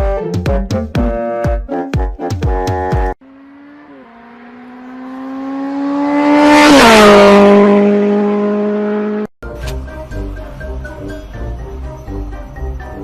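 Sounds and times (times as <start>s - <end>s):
vehicle passing by: 3.2s - 9.3s.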